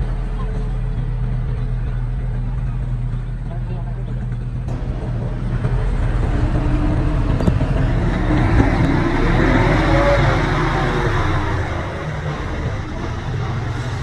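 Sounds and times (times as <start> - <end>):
diesel engine running: 0.0 - 14.0
rushing clattering noise: 4.7 - 14.0.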